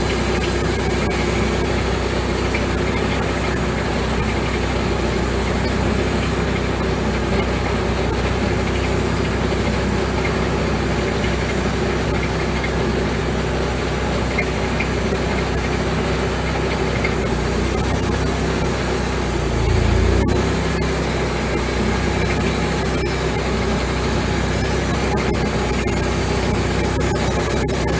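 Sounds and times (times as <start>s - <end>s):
bandsaw mill sawing log: 15.7s - 27.9s.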